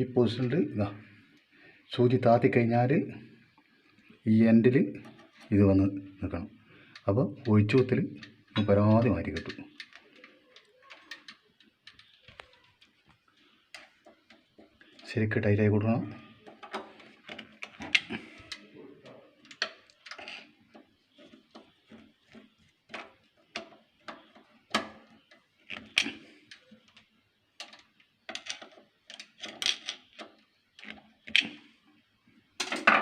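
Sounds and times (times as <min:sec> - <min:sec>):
screwdriver clicking on metal parts: 0:06.9 - 0:13.0, 0:16.4 - 0:31.6.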